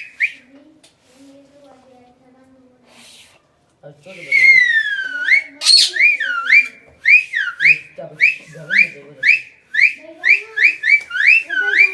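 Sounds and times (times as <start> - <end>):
cockatiel whistling: 4.4 - 7.8.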